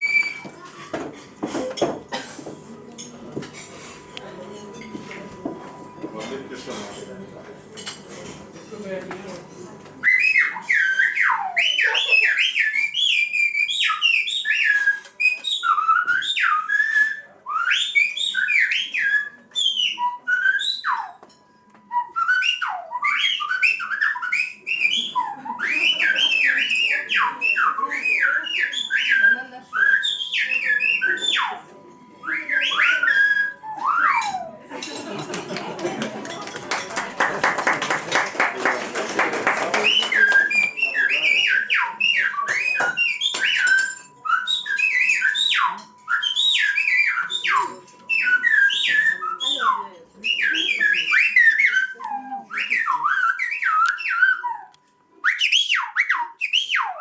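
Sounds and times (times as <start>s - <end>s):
person whistling speech: 10.0s - 21.2s, 21.9s - 34.6s, 37.2s - 57.0s.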